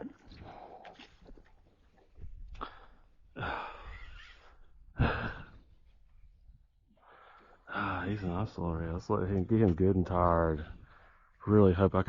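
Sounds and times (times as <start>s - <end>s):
man breathing heavily: 2.6s - 5.7s, 7.0s - 8.2s.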